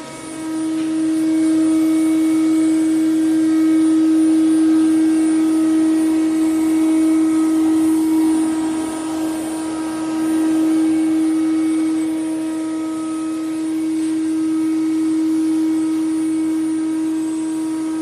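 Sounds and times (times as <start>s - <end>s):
router carving wood: 0.0s - 18.0s
router spindle whining: 0.0s - 18.0s.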